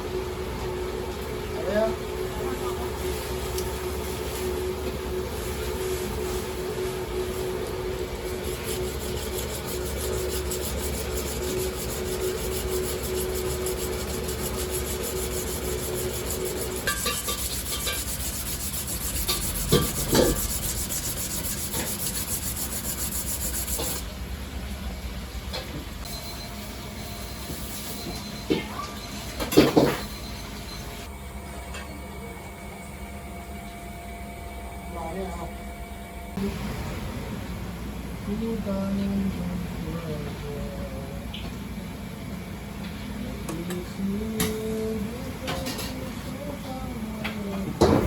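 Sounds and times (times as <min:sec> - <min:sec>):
knife grinding on whetstone: 0:08.3 - 0:24.0.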